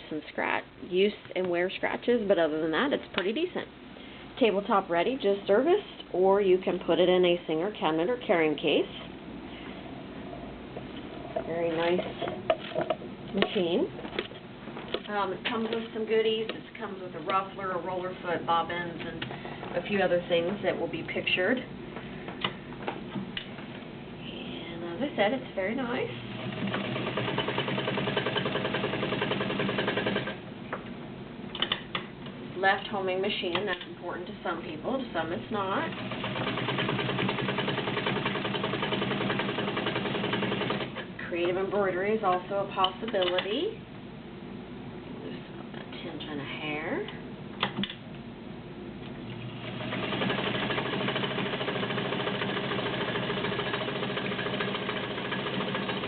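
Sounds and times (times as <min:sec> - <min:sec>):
sewing machine stitching: 0:26.3 - 0:30.4, 0:35.9 - 0:41.1, 0:49.4 - 0:56.0.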